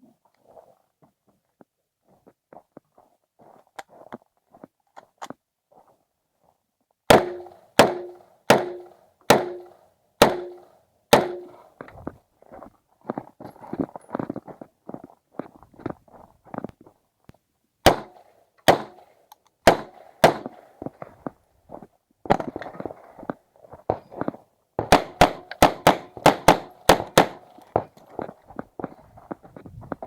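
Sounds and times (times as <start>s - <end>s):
pistol shots: 7.1s - 11.6s, 17.8s - 20.7s, 24.8s - 28.0s
footsteps: 11.3s - 17.0s, 19.8s - 30.0s.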